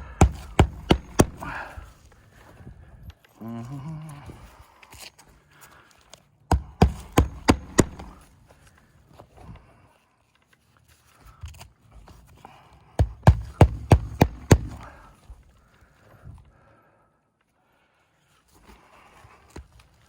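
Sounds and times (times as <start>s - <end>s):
hammer blows on roof: 0.0s - 1.8s, 6.5s - 8.3s, 13.0s - 15.1s.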